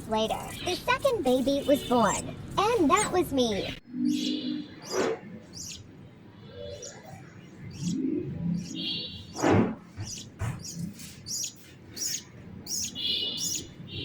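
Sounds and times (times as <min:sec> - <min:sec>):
budgerigars chirping: 0:04.2 - 0:14.0.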